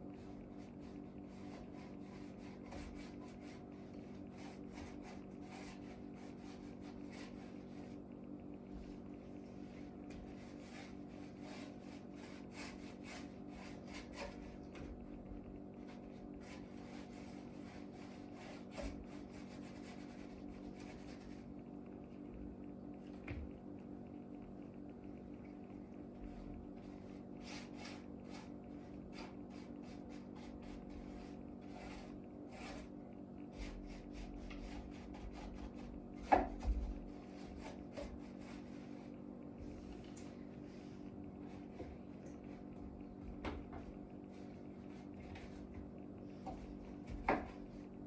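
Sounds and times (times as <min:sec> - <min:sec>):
paintbrush scrubbing on rough wood: 0:26.8 - 0:32.9.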